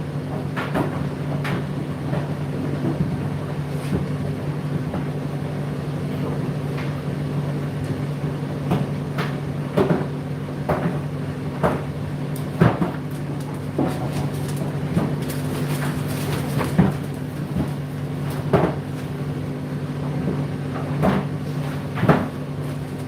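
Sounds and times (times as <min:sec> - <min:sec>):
washing machine motor hum: 0:00.0 - 0:23.0
load tumbling and knocking: 0:11.7 - 0:19.2.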